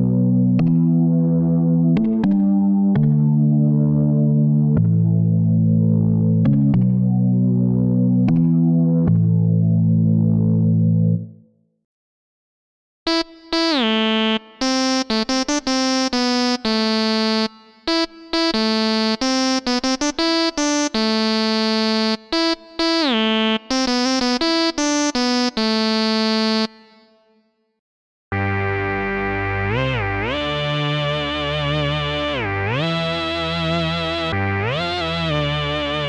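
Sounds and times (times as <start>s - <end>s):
synth lead melody: 13.1s - 27.2s, 28.4s - 36.0s.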